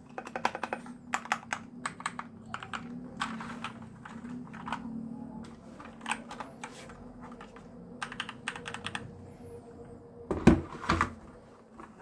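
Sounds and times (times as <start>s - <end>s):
mechanical keyboard typing: 0.0s - 5.0s, 5.8s - 9.2s.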